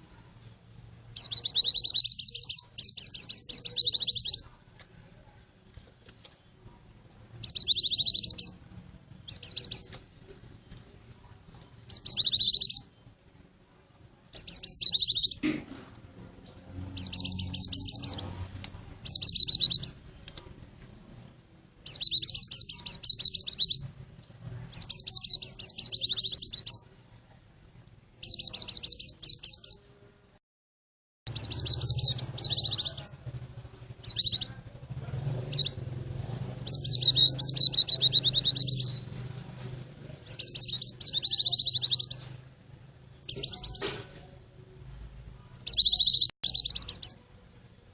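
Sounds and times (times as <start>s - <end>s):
bird trilled chattering song: 1.2s - 4.5s, 7.4s - 8.6s, 9.2s - 9.9s, 11.9s - 12.9s, 14.3s - 15.4s, 16.9s - 18.4s, 19.0s - 20.0s, 21.8s - 23.9s, 24.7s - 26.8s, 28.2s - 29.8s, 31.3s - 33.2s, 34.0s - 34.6s, 35.5s - 39.1s, 40.2s - 42.2s, 43.2s - 44.0s, 45.6s - 47.2s.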